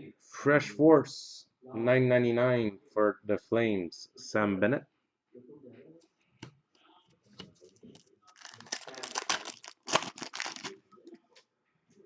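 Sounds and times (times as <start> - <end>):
card pack wrapper crinkling: 8.0 - 10.8.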